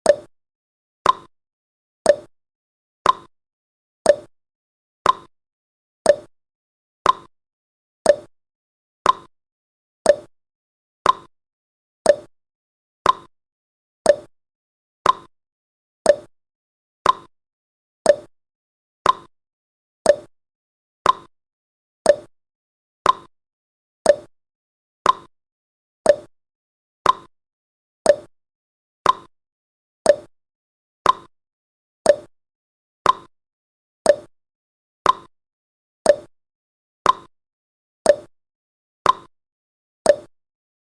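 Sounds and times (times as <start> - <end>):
timer ticking: 0.0 - 0.3, 1.0 - 1.3, 2.1 - 2.3, 3.0 - 3.3, 4.1 - 4.3, 5.0 - 5.3, 6.1 - 6.3, 7.0 - 7.3, 8.0 - 8.3, 9.0 - 9.3, 10.0 - 10.3, 11.0 - 11.3, 12.0 - 12.3, 13.0 - 13.3, 14.1 - 14.3, 15.0 - 15.3, 16.1 - 16.3, 17.0 - 17.3, 18.1 - 18.3, 19.0 - 19.3, 20.1 - 20.3, 21.0 - 21.3, 22.1 - 22.3, 23.0 - 23.3, 24.0 - 24.3, 25.0 - 25.3, 26.0 - 26.3, 27.0 - 27.3, 28.1 - 28.3, 29.0 - 29.3, 30.1 - 30.3, 31.0 - 31.3, 32.1 - 32.3, 33.1 - 33.3, 34.1 - 34.3, 35.1 - 35.3, 36.1 - 36.3, 37.1 - 37.3, 38.1 - 38.3, 39.1 - 39.3, 40.1 - 40.3.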